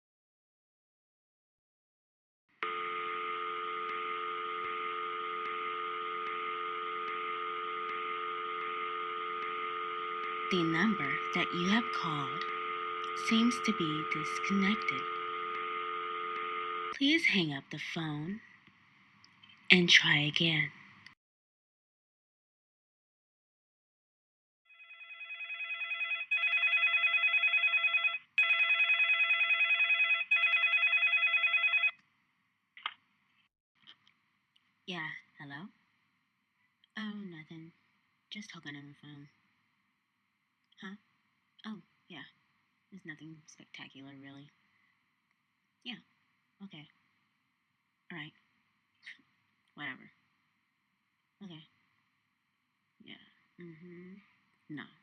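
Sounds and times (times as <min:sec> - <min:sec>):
telephone ringing: 0:02.6 - 0:17.0, 0:24.7 - 0:32.0.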